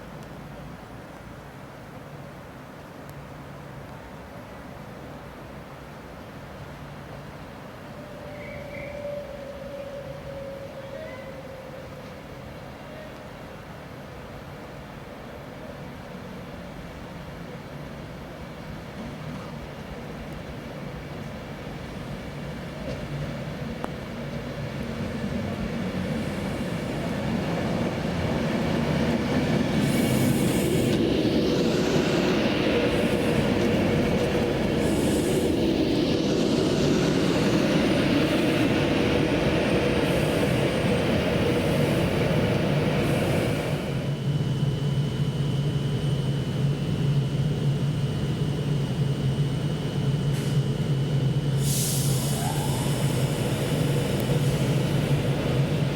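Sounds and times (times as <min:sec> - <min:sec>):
train running on rails: 0:00.0 - 0:55.9
steady low hum: 0:24.8 - 0:55.9
faint high whine: 0:25.1 - 0:55.9.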